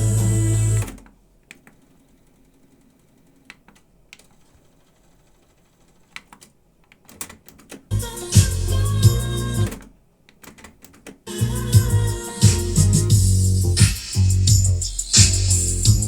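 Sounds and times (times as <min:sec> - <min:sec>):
music playing: 0:00.0 - 0:00.9, 0:07.9 - 0:09.8, 0:11.3 - 0:16.0.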